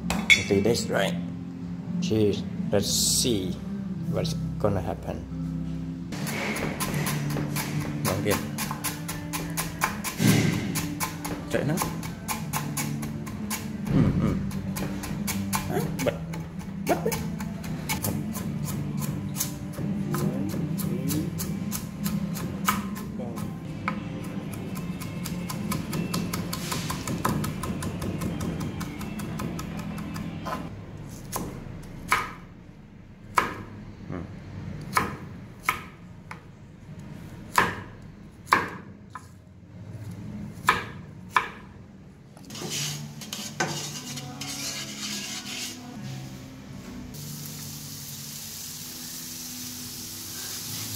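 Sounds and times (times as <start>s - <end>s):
knife chopping on cutting board: 6.2s - 32.4s, 37.5s - 37.9s, 38.5s - 39.3s, 40.6s - 41.7s.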